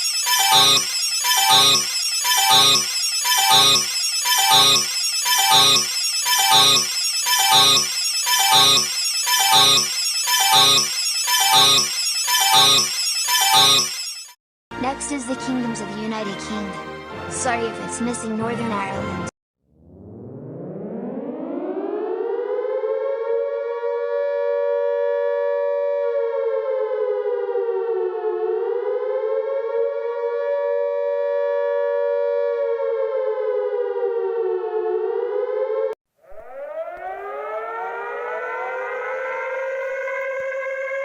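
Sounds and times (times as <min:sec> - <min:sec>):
civil defence siren wailing: 0:21.4 - 0:41.0.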